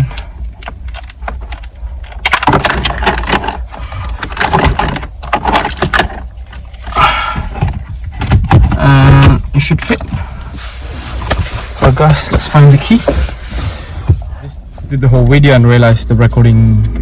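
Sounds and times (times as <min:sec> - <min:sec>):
plastic and wiring clattering: 0:00.0 - 0:10.6.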